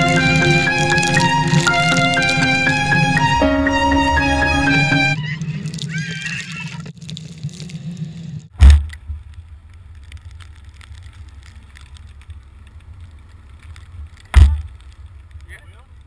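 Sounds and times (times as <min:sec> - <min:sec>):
background music: 0:00.0 - 0:05.3.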